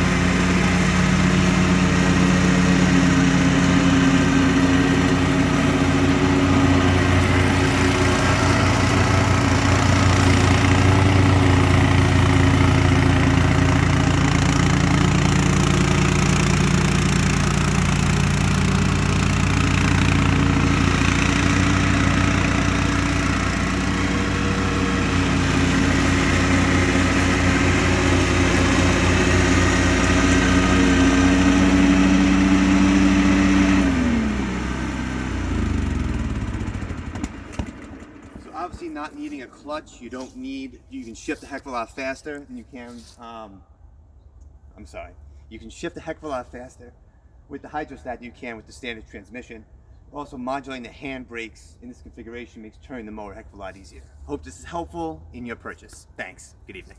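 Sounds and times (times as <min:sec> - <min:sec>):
walk-behind tractor engine running: 0:00.0 - 0:39.6.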